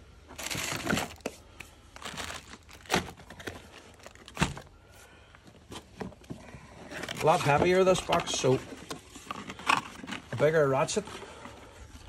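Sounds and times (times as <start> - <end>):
sharp crackles of packaging: 0.3 - 4.8
packaging rustling and crinkling: 0.3 - 12.0.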